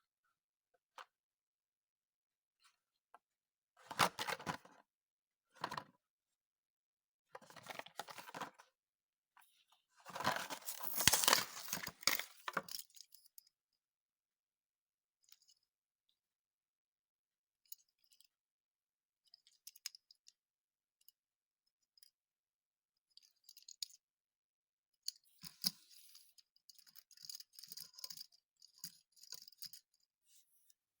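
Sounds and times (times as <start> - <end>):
plastic packaging crackling: 10.5 - 12.3.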